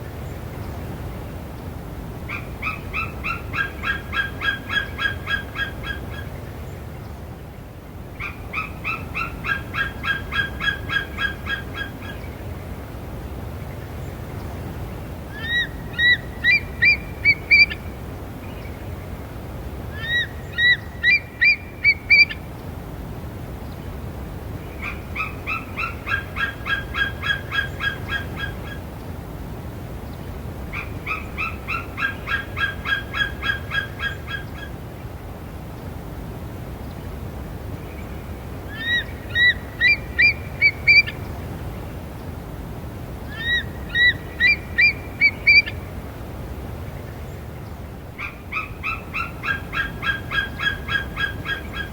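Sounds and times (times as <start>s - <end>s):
eagle piping calls: 15.4s - 17.8s, 20.0s - 22.4s, 38.7s - 41.2s, 43.3s - 45.8s, 48.2s - 51.9s.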